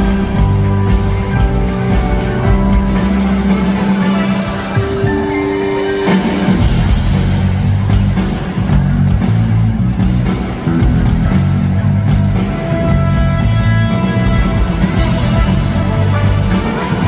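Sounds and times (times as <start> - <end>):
loud rock music: 0.0 - 17.0.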